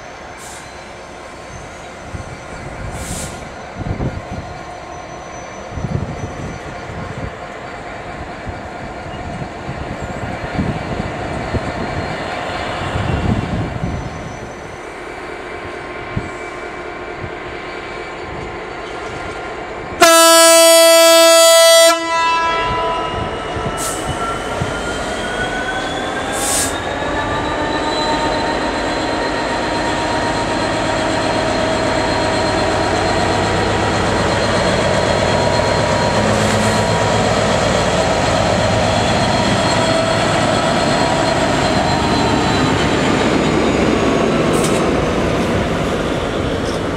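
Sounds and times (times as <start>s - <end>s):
approaching train running: 0.0s - 46.9s
train horn: 20.0s - 24.1s.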